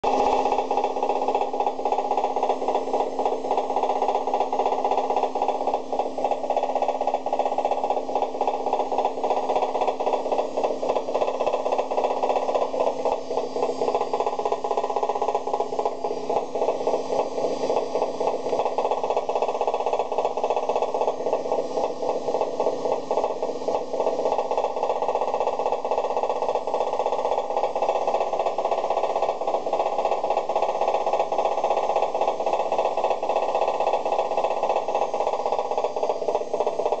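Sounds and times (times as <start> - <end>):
washing machine hum: 0.0 - 37.0
washing machine knocking rattle: 17.7 - 37.0.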